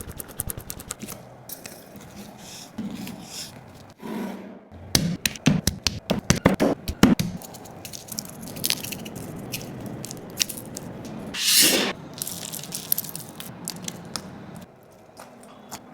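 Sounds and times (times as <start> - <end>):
food crackling and hissing: 7.4 - 14.7
spray-like hiss: 11.4 - 12.0.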